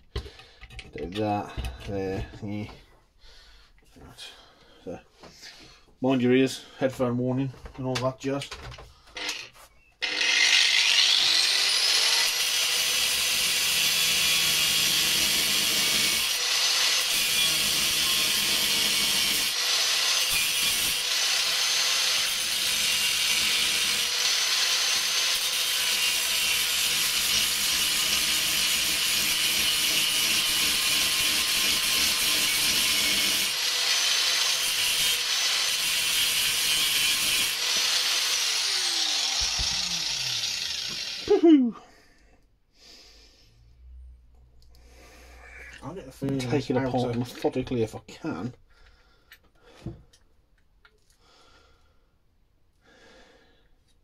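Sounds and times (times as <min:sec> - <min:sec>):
angle grinder cutting metal: 0:09.2 - 0:41.4.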